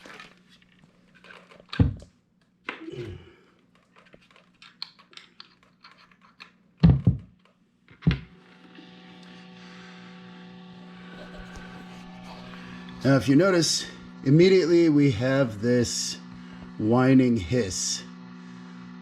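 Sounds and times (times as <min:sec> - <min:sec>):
low amp hum: 0:02.8 - 0:03.6, 0:07.9 - 0:19.0
buzzing whining hiss: 0:08.4 - 0:19.0.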